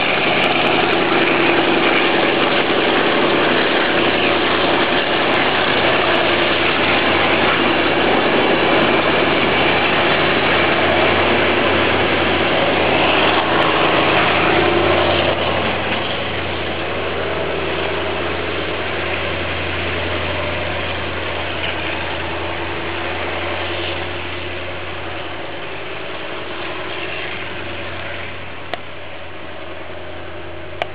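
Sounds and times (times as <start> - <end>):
diesel train running: 0.0 - 30.9.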